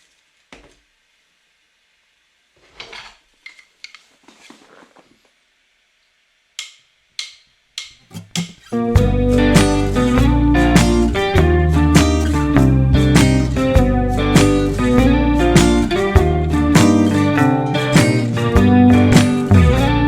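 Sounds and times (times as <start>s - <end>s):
small objects rustling and scraping: 2.6s - 5.4s
guitar music: 8.1s - 20.0s.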